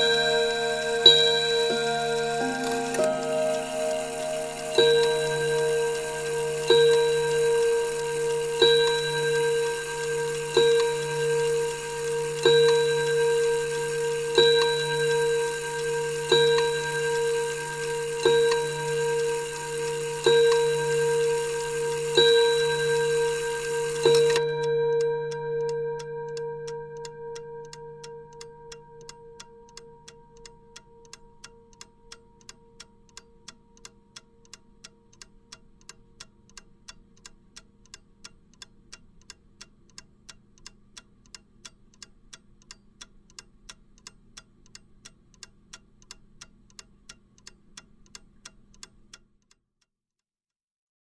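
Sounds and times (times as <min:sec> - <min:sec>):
clock chime ringing: 0:00.0 - 0:32.5
clock ticking: 0:00.0 - 0:49.6.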